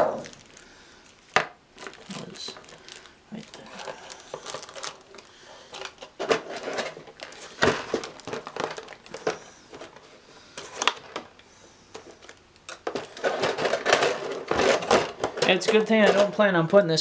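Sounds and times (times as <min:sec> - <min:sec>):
plastic packaging crinkling: 0:00.0 - 0:16.8
parts clicking and knocking: 0:10.6 - 0:16.4.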